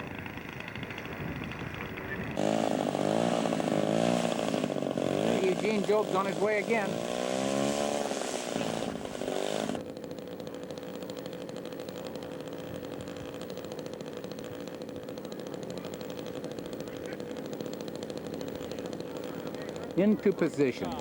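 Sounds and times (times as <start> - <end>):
model airplane engine droning: 0.0 - 21.0.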